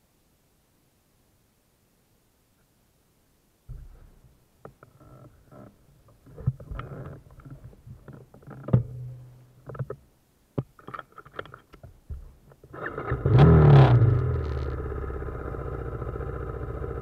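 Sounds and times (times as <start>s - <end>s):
motorcycle engine at low revs: 12.2s - 17.0s.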